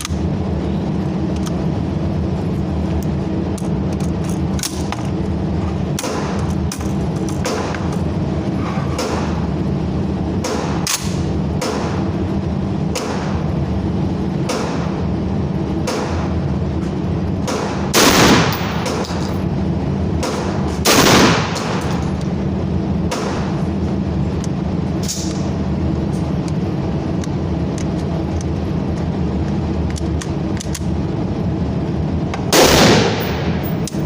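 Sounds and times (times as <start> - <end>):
steady low hum: 0.0 - 34.0
gunshots: 17.5 - 19.0, 20.2 - 22.0, 32.5 - 33.8
loud long blasts: 20.8 - 21.9, 32.5 - 33.8.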